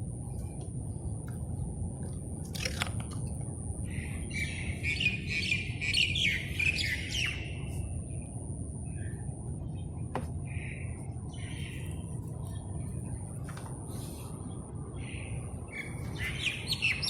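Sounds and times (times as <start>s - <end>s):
bird chirping: 3.7s - 7.7s, 8.8s - 13.2s, 15.0s - 17.0s.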